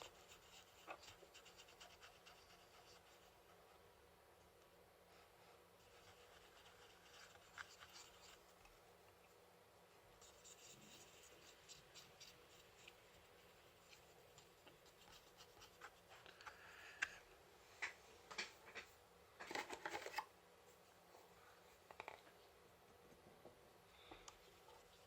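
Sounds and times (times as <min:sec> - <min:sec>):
faint scratching: 0:05.0 - 0:17.3, 0:24.0 - 0:25.0.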